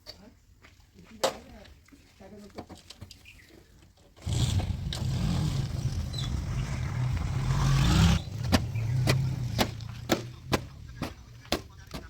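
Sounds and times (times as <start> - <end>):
diesel engine droning: 4.2 - 12.0.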